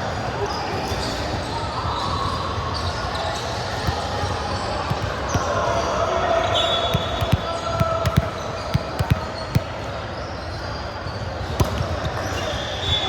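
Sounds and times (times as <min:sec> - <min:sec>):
voices in a large hall: 0:00.0 - 0:13.0
sneaker squeaks: 0:00.4 - 0:13.0
ball thudding on court: 0:06.9 - 0:09.7, 0:11.6 - 0:12.3.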